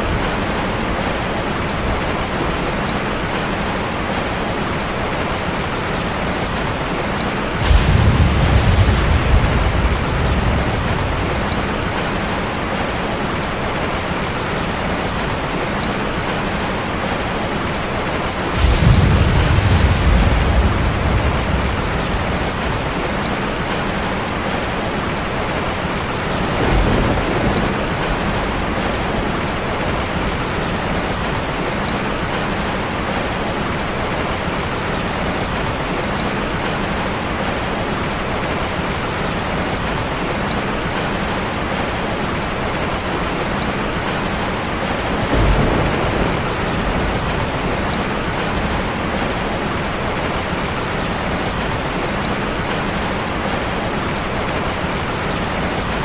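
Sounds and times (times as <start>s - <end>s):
heavy rain: 0.0s - 56.0s
low rolls of thunder: 6.5s - 15.4s, 17.9s - 24.7s, 25.7s - 33.2s, 44.4s - 50.5s.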